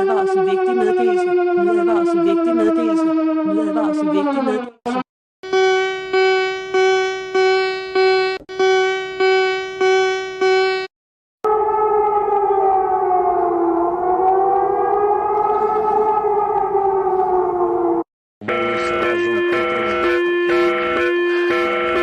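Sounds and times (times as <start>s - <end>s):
wavering siren tone: 0.0s - 22.0s
repeated alert beeps: 4.6s - 10.9s.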